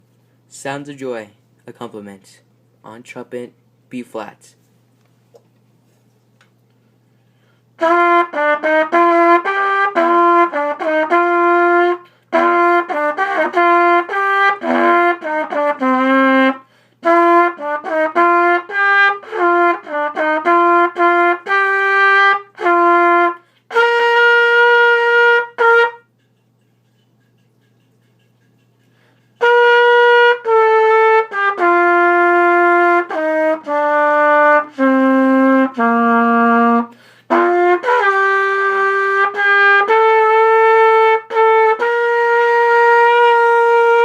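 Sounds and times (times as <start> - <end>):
solo trumpet melody: 7.7 - 26.2, 29.4 - 44.0.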